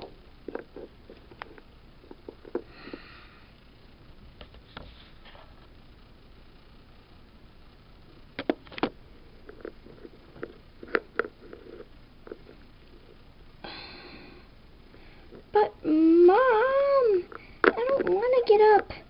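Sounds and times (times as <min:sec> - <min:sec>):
soft breathy noise: 0:02.6 - 0:03.7, 0:13.6 - 0:16.1.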